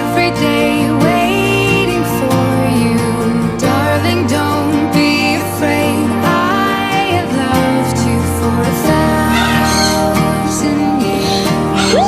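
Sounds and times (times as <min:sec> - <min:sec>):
person singing: 0:00.0 - 0:12.0
sustained instrument chords: 0:00.0 - 0:12.0.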